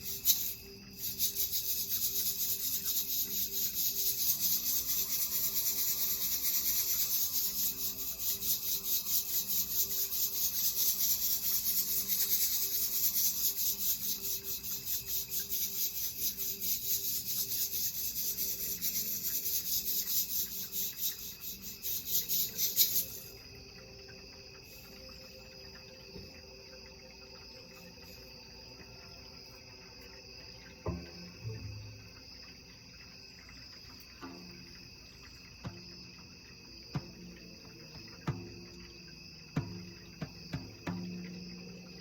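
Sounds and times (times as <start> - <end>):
brief knock: 30.8 - 32.1, 39.6 - 41.4.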